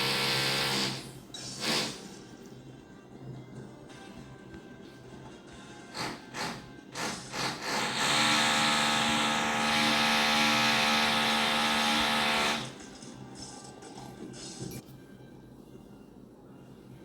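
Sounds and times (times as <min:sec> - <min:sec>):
muffled power tool motor whine: 0:07.3 - 0:12.7.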